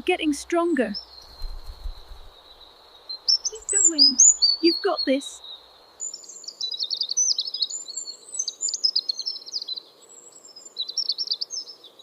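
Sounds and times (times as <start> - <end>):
faint background hiss: 0.0 - 12.0
small bird chirping: 0.0 - 12.0.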